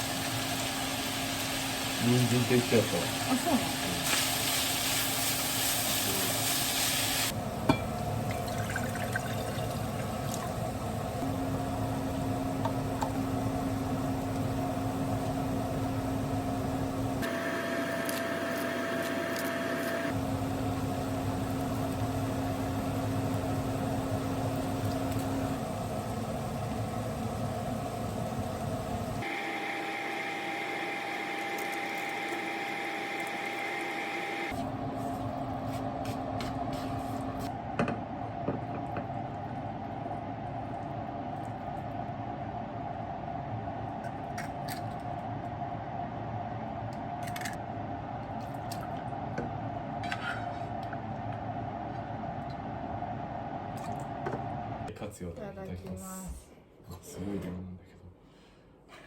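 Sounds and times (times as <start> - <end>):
food frying in a pan: 0.0 - 18.3, 20.1 - 34.4
low hum: 37.0 - 54.9.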